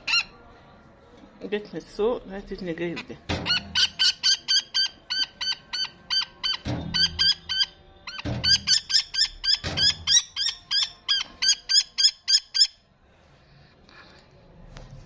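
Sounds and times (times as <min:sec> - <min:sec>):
low thuds: 0:03.2 - 0:04.2, 0:06.6 - 0:10.4.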